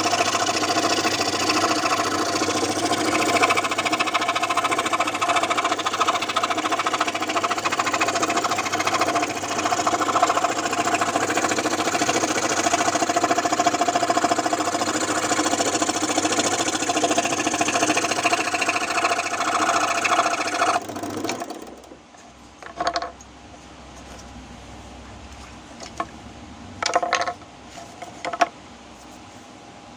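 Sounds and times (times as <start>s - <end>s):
scroll saw running: 0.0s - 22.0s.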